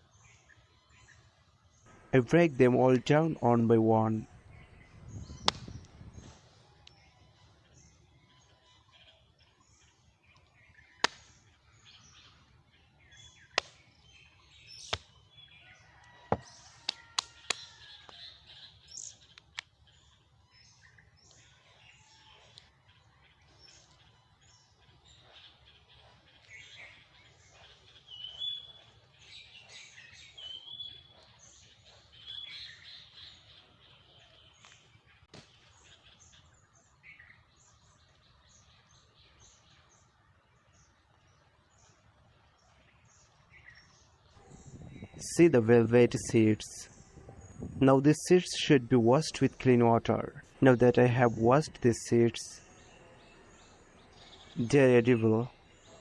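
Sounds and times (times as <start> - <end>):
birds chirping: 0.0 - 56.0
fruit being cracked open: 11.0 - 11.4.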